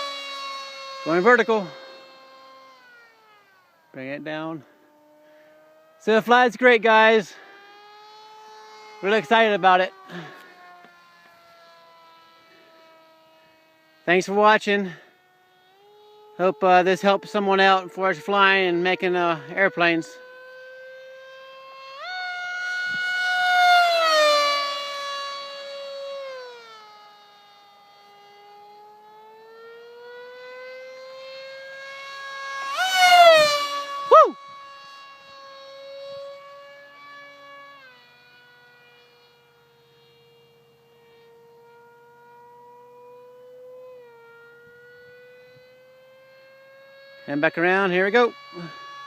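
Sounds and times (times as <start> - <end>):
model airplane motor whining: 0.0 - 49.0.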